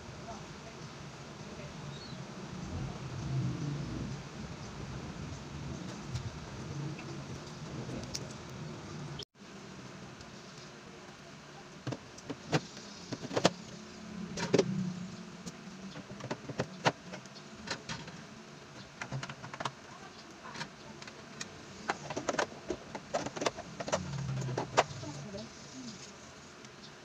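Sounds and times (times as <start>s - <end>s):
hard objects clicking and knocking: 18.8s - 19.9s, 20.5s - 25.0s.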